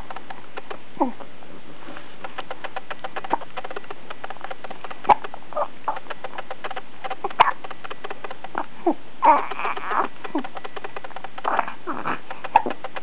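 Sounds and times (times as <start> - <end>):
faint fast ticking: 2.2 - 13.0.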